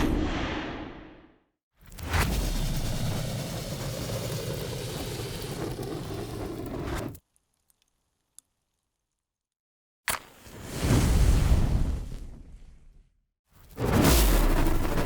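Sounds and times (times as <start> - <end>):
large flames roaring: 1.9 - 7.2.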